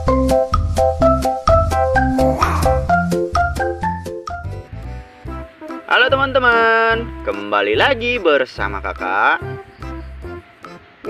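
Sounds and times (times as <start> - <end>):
upbeat keyboard music with beat: 0.0 - 11.0.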